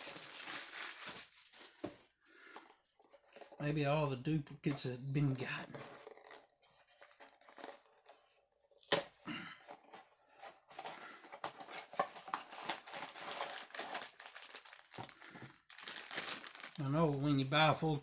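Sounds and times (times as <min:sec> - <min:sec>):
wrapper crinkling and rustling: 0:00.0 - 0:02.2, 0:10.4 - 0:18.0
packaging snapping: 0:11.6 - 0:16.8.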